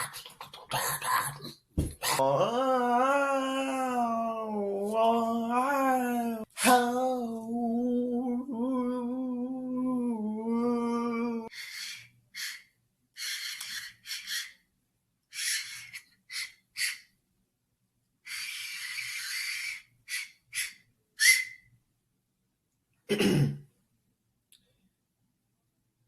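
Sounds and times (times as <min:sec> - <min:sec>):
man humming a note: 0:02.2 - 0:11.5
hissing mouth noises: 0:11.5 - 0:14.6, 0:15.3 - 0:17.1, 0:18.2 - 0:21.5.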